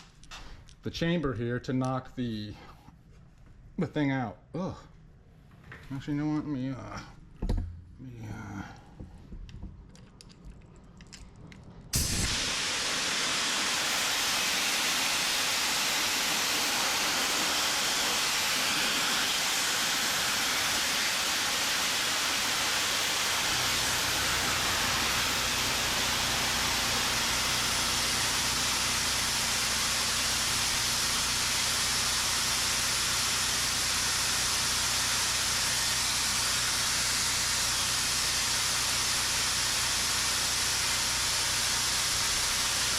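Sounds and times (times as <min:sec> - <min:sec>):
compressed air hissing: 0:12.0 - 0:42.9.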